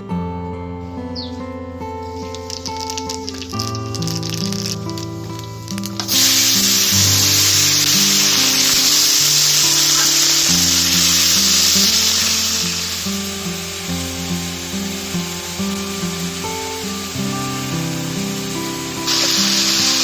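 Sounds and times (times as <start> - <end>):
food sizzling in hot oil: 2.1 - 20.0.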